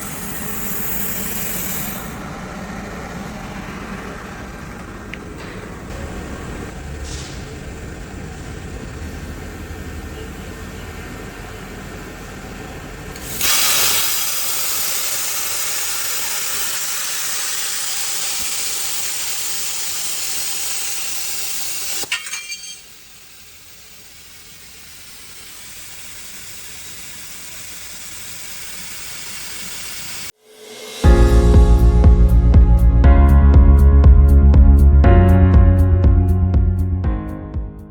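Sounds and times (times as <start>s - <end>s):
cutting torch hissing: 0.0s - 2.5s, 5.9s - 9.2s, 13.1s - 30.4s.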